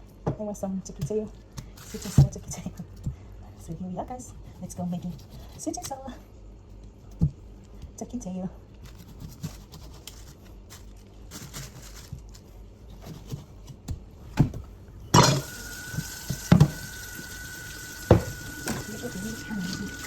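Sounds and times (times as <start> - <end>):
pots and dishes clattering: 15.2 - 15.6
tap water running: 15.2 - 20.0.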